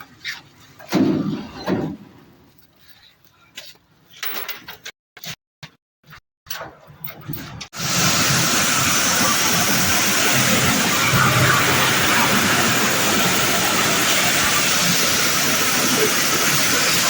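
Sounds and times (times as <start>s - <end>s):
engine hiss and rumble: 7.8s - 17.0s.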